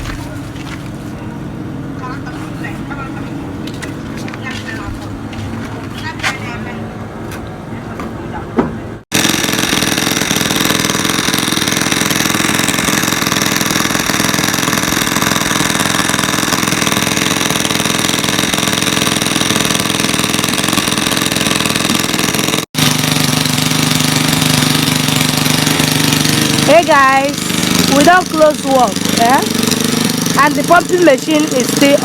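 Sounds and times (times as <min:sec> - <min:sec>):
engine-driven water pump running: 0:09.1 - 0:32.0.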